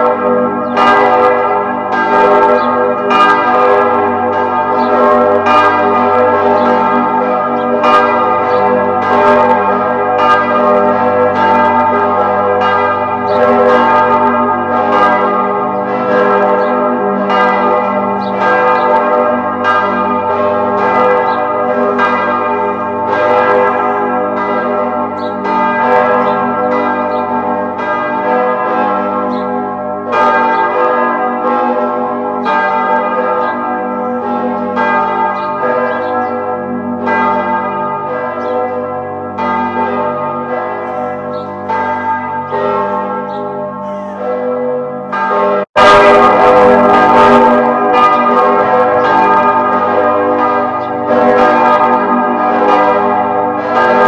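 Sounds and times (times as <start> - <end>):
church bells pealing: 0.0 - 54.0.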